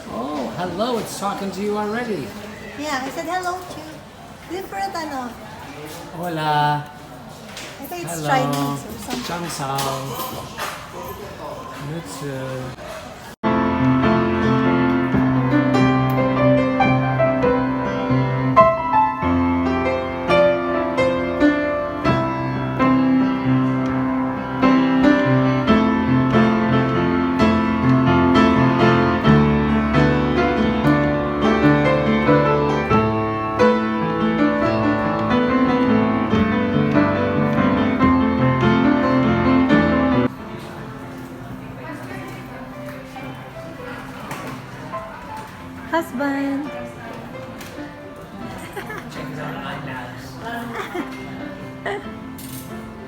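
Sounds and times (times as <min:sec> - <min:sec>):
piano music: 0:13.4 - 0:41.8.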